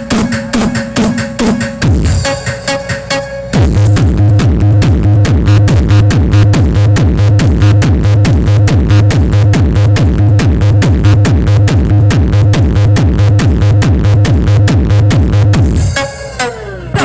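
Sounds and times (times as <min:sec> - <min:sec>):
loud electronic dance music: 0:00.0 - 0:17.0.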